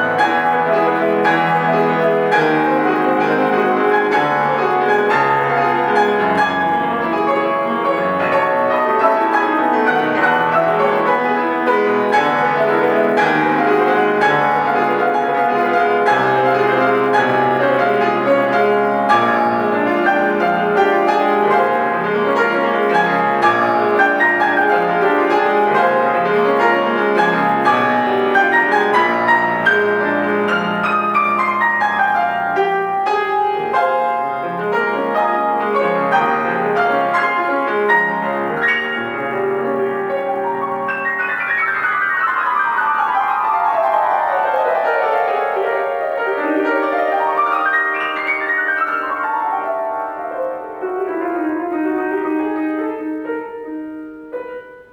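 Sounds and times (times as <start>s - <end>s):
classical piano playing: 0.0s - 54.9s.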